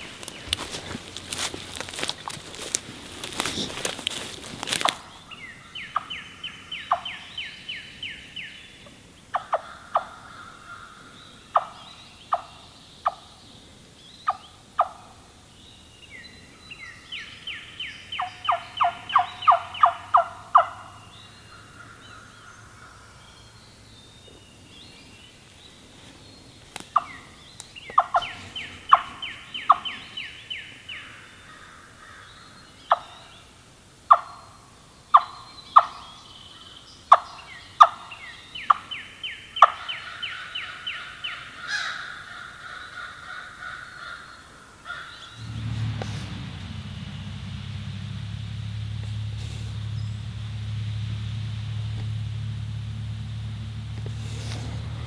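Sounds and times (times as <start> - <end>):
loud rustling: 0.0 - 5.0, 53.8 - 55.0
wild turkey calling: 0.0 - 13.6, 14.2 - 24.4, 26.7 - 55.0.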